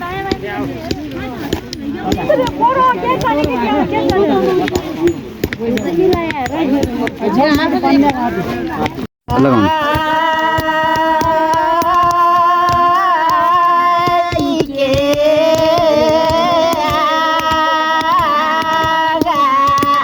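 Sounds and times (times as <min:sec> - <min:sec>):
person singing long notes: 0:09.3 - 0:20.0.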